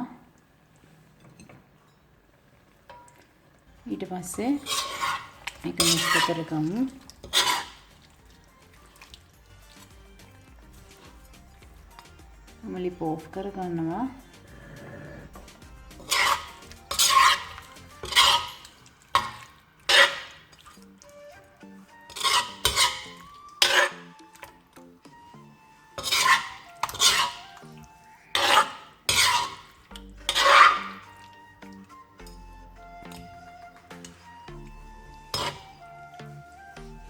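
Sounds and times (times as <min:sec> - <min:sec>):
spoon scraping pot of curry: 0:04.4 - 0:12.6, 0:14.2 - 0:21.0, 0:21.7 - 0:24.5, 0:26.0 - 0:32.0, 0:33.2 - 0:35.8.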